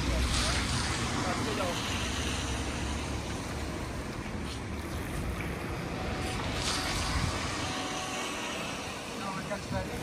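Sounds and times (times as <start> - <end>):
wind buffeting microphone: 4.1 - 10.0.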